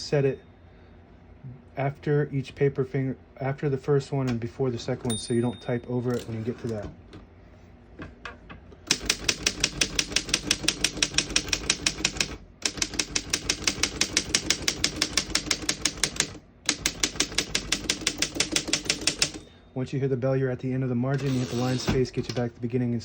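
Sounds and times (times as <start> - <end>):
manual typewriter typing: 8.8 - 19.5, 21.2 - 22.4.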